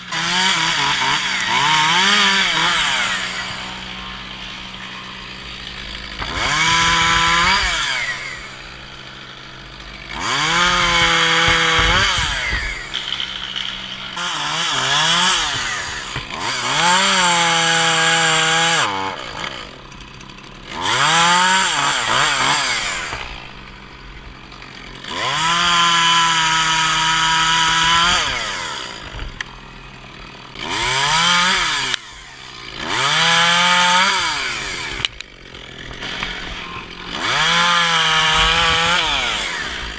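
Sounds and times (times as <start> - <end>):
chainsaw revving and cutting: 0.0 - 39.9.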